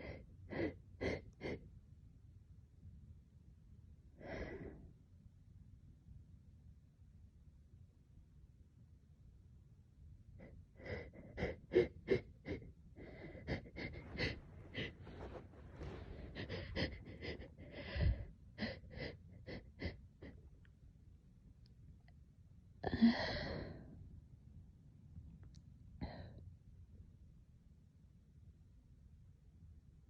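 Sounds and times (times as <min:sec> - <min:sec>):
person sniffling breathing with wheeze: 0:00.0 - 0:01.6, 0:10.4 - 0:20.4.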